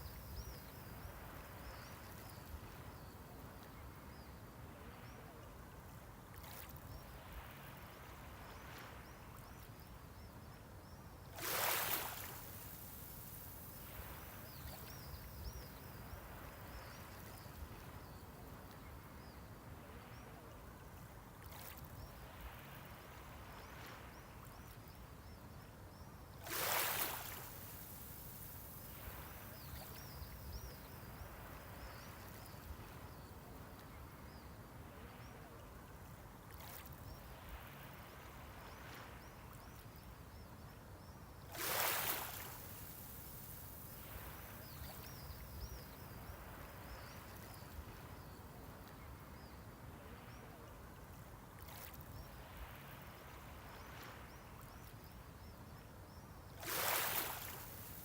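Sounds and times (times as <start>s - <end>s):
waves washing on shore: 11.4s - 15.1s, 26.4s - 32.2s, 41.5s - 47.3s, 56.6s - 58.0s.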